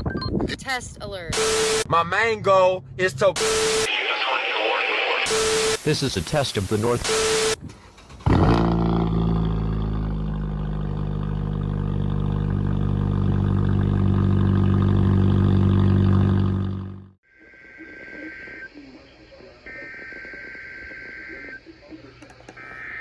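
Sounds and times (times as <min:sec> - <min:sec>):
distorted emergency alert tone: 0:17.4 - 0:21.8
faint high electronic data tones: 0:17.4 - 0:23.0.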